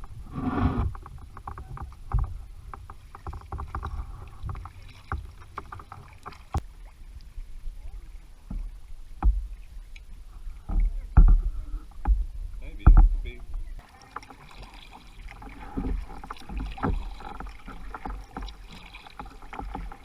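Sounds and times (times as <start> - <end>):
paddle dipping and dripping: 0.0 - 20.0
heavy thumps: 10.6 - 13.8.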